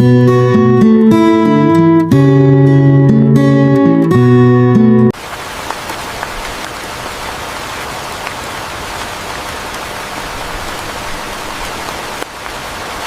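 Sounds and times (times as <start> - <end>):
acoustic guitar music: 0.0 - 5.1
steady rain: 5.1 - 13.0
rain drop ticks: 5.2 - 6.8, 10.5 - 12.6.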